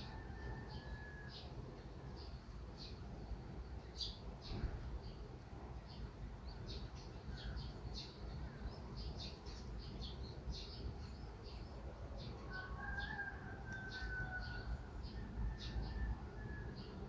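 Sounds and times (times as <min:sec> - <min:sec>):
small birds chirping: 0:05.8 - 0:15.8.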